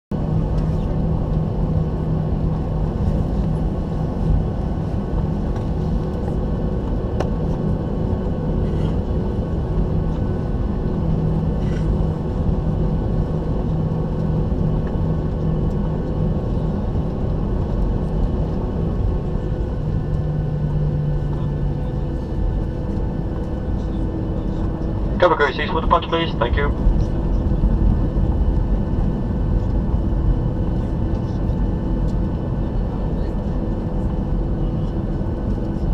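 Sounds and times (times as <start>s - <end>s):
airplane cabin engine hum: 0.1s - 35.9s.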